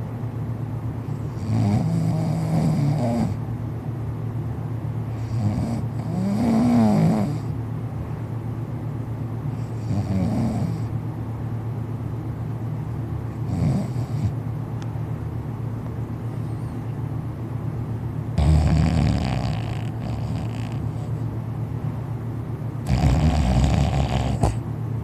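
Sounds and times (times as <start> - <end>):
loud snoring: 1.3 - 3.4, 5.2 - 7.5, 9.6 - 10.9, 13.4 - 14.4, 18.4 - 21.1, 22.8 - 24.6.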